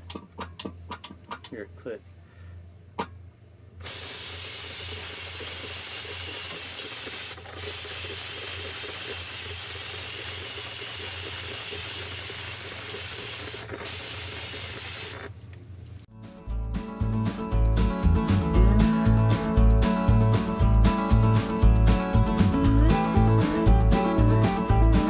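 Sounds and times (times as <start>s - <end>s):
powder spray gun hissing: 3.8s - 15.3s.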